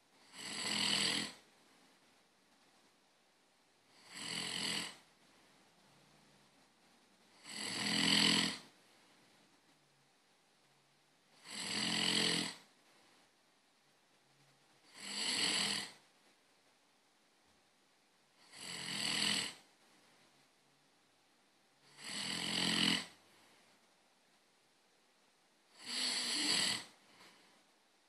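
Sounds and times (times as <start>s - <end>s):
person snoring: 0.2s - 1.4s, 3.9s - 5.1s, 7.3s - 8.7s, 11.4s - 12.7s, 14.8s - 16.0s, 18.4s - 19.7s, 21.8s - 23.2s, 25.7s - 27.4s.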